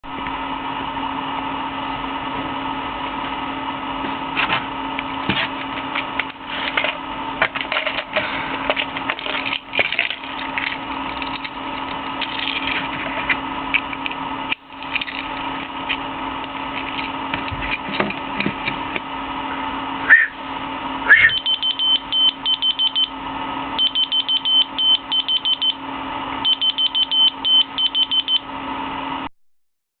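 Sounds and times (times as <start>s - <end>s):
electrical hum: 0.0s - 29.3s
short rising whistles: 20.0s - 20.4s, 21.0s - 21.5s
key finder beeping: 21.2s - 23.2s, 23.8s - 25.8s, 26.4s - 28.5s.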